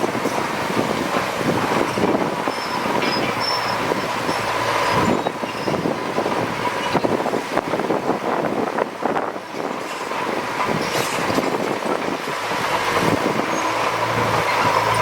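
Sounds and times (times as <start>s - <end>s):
heavy machinery engine running: 0.0s - 15.0s
rattles and clanks: 9.5s - 15.0s.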